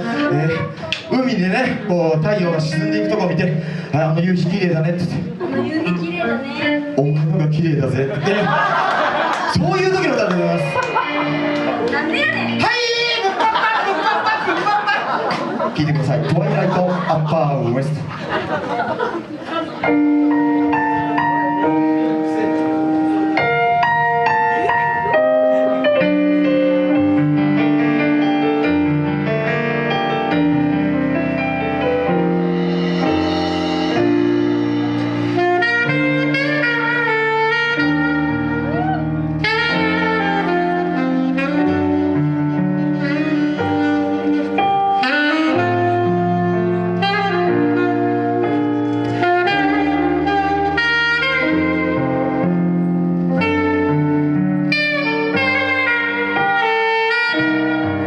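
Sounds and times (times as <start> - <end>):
saxophone melody: 0.0 - 7.8, 8.5 - 15.2, 19.8 - 58.0
piano chords: 0.0 - 58.0
bass line: 19.9 - 58.0.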